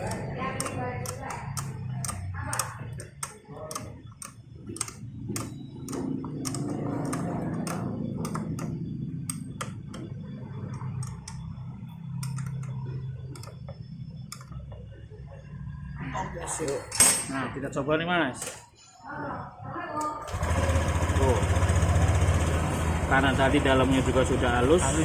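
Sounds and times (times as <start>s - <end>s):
hand tools clicking on metal: 0.0s - 11.5s, 12.1s - 14.7s.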